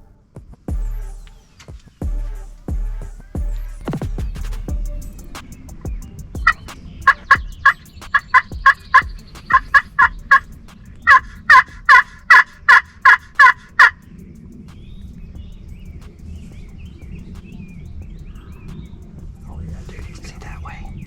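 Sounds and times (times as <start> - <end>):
turkey yelping: 6.4 - 14.0.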